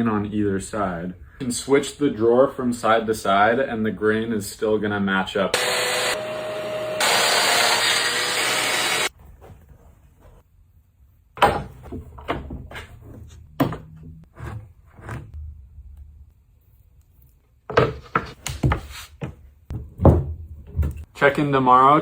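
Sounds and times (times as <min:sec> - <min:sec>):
power tool whining: 0:05.6 - 0:09.1.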